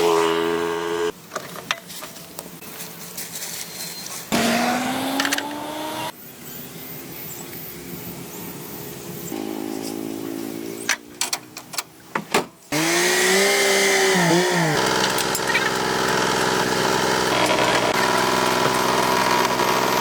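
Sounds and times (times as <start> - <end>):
power tool motor running: 0.0 - 1.1, 4.3 - 6.1, 12.7 - 20.0.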